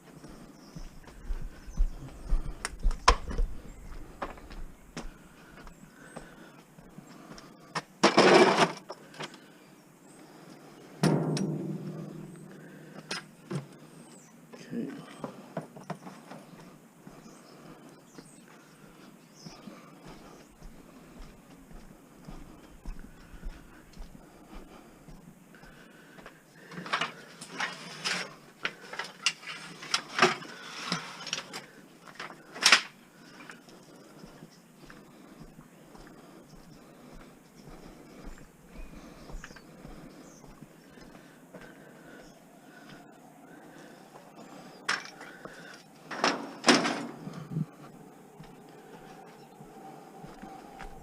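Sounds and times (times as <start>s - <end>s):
ringing metal clang: 11.0s - 12.6s.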